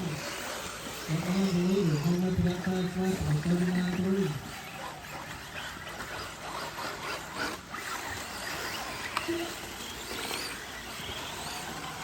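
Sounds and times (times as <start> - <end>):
rc car motor whines: 0.0 - 12.0.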